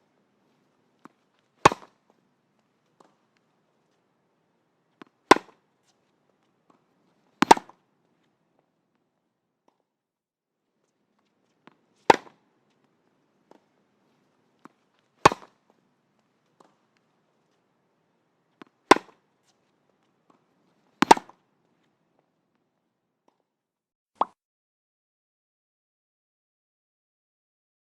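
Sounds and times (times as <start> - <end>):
tennis ball struck: 1.0 - 2.2, 5.0 - 5.7, 6.6 - 7.8, 11.6 - 12.5, 14.6 - 15.9, 18.6 - 19.3, 20.2 - 21.4.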